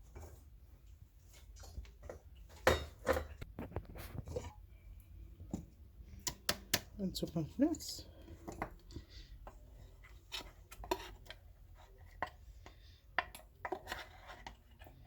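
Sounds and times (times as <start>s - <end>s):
kitchen things clattering: 1.4s - 4.6s.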